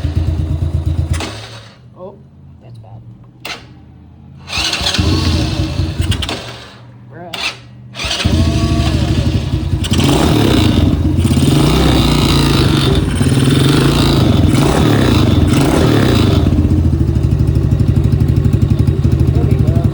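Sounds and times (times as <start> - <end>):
atv engine running: 0.0 - 1.7, 4.5 - 6.3, 8.0 - 19.9.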